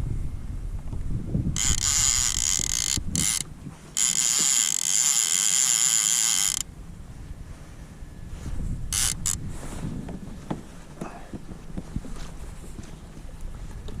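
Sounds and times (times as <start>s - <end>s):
fishing reel ratcheting: 1.6s - 6.7s, 8.9s - 9.4s.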